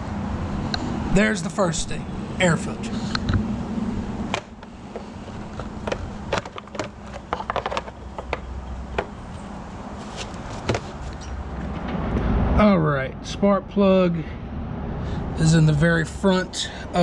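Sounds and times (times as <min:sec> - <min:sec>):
tools clicking and knocking: 0:04.3 - 0:09.2.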